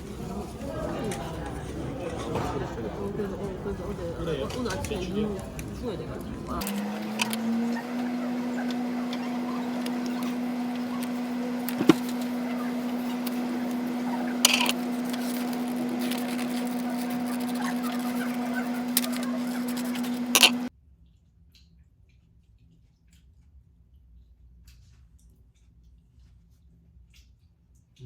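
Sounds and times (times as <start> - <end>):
electric motor hum: 0.0 - 20.7.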